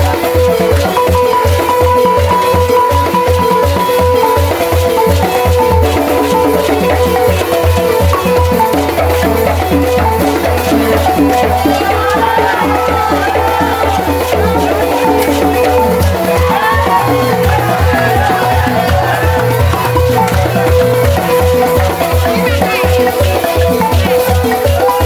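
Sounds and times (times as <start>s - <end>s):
balafon playing: 0.0s - 25.0s
rattles shaking: 4.2s - 25.0s
person singing: 16.4s - 23.5s.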